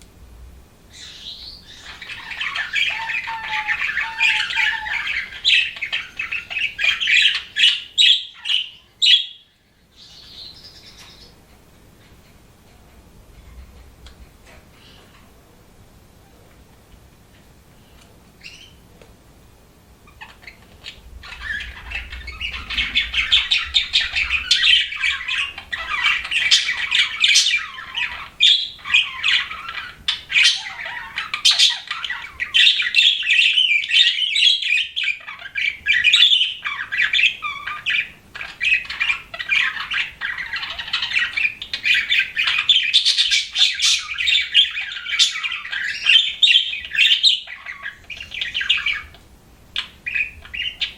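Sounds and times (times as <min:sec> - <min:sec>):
budgerigars chattering: 0:00.9 - 0:11.4, 0:20.0 - 0:50.9.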